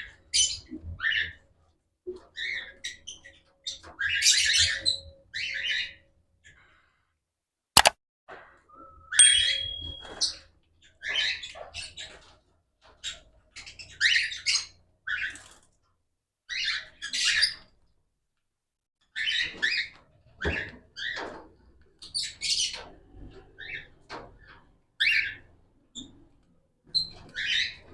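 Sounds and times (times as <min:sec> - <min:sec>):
cockatiels calling and chirping: 0:13.0 - 0:15.5, 0:23.6 - 0:25.4, 0:26.9 - 0:27.9.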